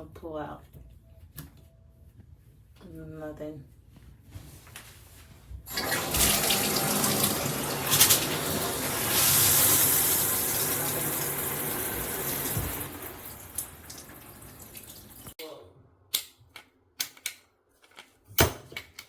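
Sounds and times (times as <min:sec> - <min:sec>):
shower water spraying: 0:05.7 - 0:15.4.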